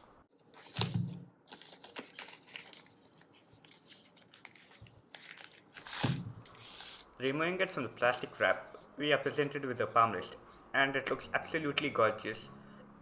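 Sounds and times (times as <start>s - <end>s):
plastic wrap rustling: 0.0s - 7.1s.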